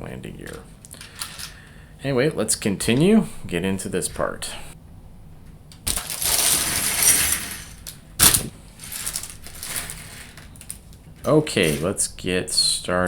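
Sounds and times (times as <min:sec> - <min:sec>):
plastic bricks rattling: 0:05.9 - 0:12.0.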